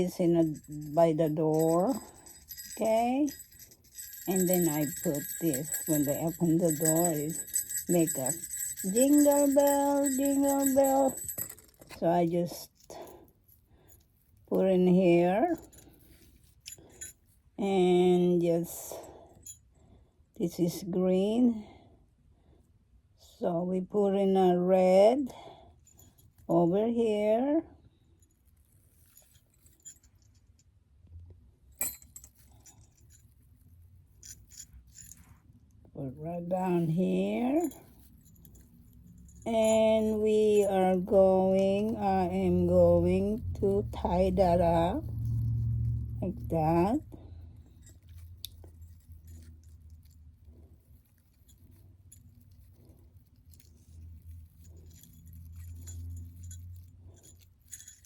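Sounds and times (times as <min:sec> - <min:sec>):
bell clink: 0:00.0 - 0:12.0
light clinks: 0:00.0 - 0:12.0, 0:31.8 - 0:35.5, 0:36.7 - 0:58.0
small jingle bells jingling: 0:00.0 - 0:17.4, 0:28.1 - 0:30.7, 0:31.8 - 0:58.0.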